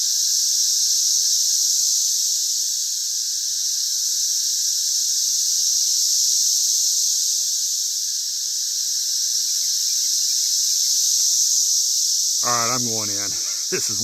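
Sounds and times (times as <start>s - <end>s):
cicadas buzzing: 8.7s - 14.0s.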